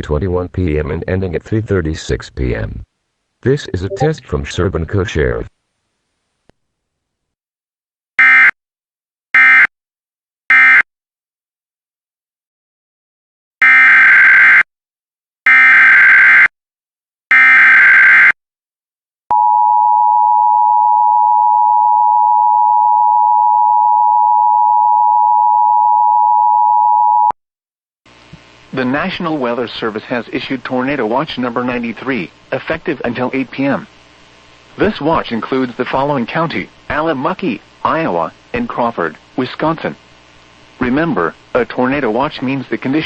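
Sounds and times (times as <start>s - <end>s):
two-tone attention signal: 3.8s - 4.2s.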